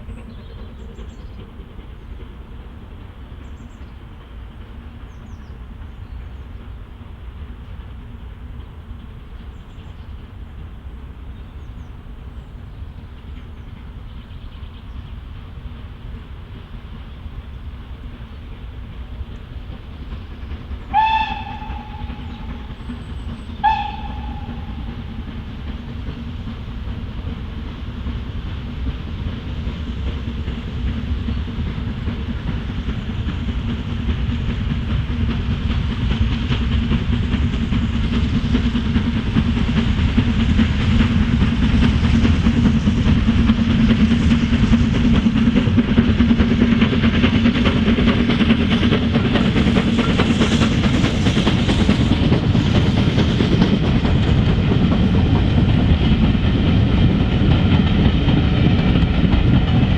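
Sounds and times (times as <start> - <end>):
train running rumble: 0.0 - 59.9
steam locomotive whistle blasts: 20.8 - 23.0, 23.6 - 25.4.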